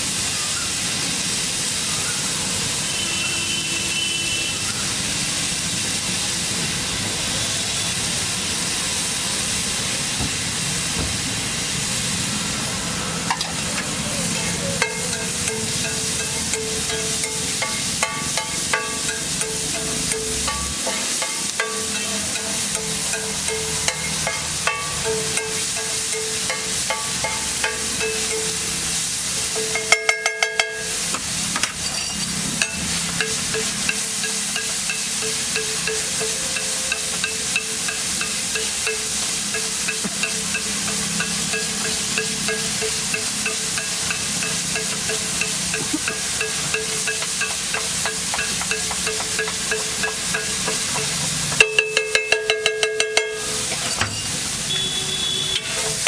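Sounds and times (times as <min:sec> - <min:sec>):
egg sizzling on griddle: 0:00.0 - 0:56.0
metal spatula scraping and tapping: 0:14.8 - 0:28.6, 0:29.6 - 0:56.0.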